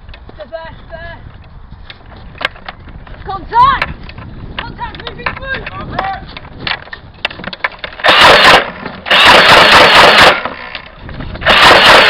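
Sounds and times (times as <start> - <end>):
motorized toy blaster firing: 8.0 - 10.8, 11.4 - 12.0.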